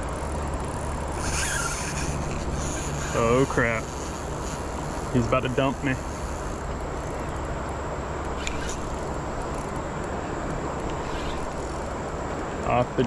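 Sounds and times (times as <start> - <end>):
high squeak: 1.2 - 6.5, 8.4 - 9.1, 11.0 - 11.8.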